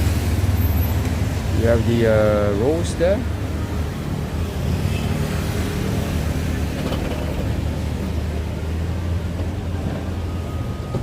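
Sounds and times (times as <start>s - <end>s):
engines running close by: 0.0s - 11.0s
low rumble of road traffic: 0.0s - 11.0s.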